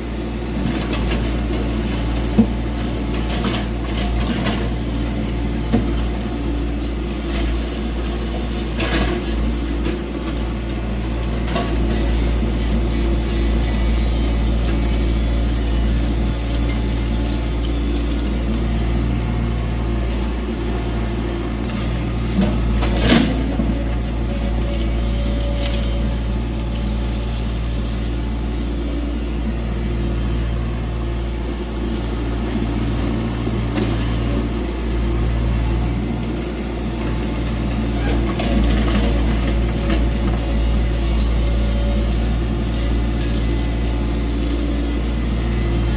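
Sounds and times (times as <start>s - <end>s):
excavator diesel engine running: 0.0s - 45.9s.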